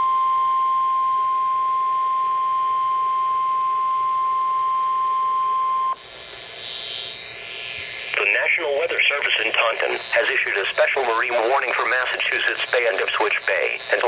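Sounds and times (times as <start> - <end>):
steady alarm tone: 0.0 - 14.0
faint radio hiss: 6.0 - 14.0.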